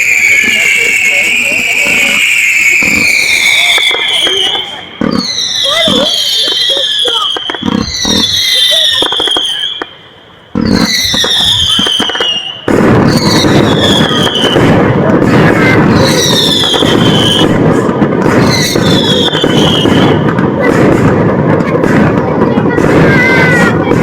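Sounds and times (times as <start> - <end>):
firework whistle falling in pitch: 0.0 - 14.8, 15.4 - 17.6, 18.4 - 20.3
firework crackling: 0.0 - 24.0.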